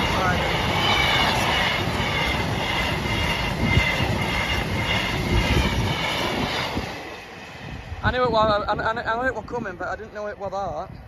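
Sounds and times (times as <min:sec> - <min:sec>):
crossing alarm warbling: 0:00.0 - 0:06.9
freight train rumble and clatter: 0:00.0 - 0:11.0.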